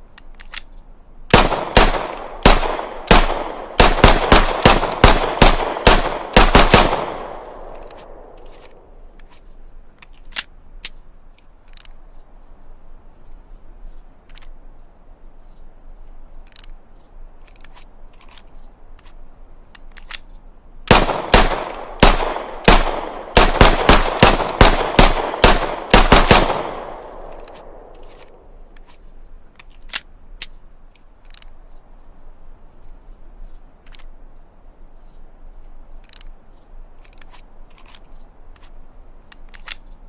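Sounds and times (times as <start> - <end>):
pistol shots: 1.3 - 8.8, 20.9 - 28.2.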